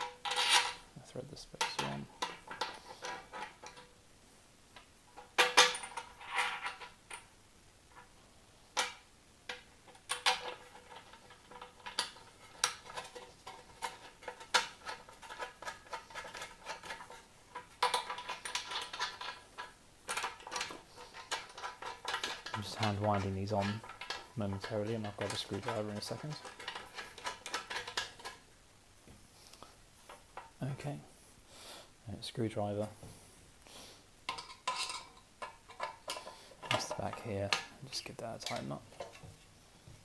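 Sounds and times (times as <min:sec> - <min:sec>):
metal screws clicking and clinking: 0:00.0 - 0:00.8, 0:05.2 - 0:07.3, 0:08.8 - 0:28.4, 0:34.3 - 0:37.8.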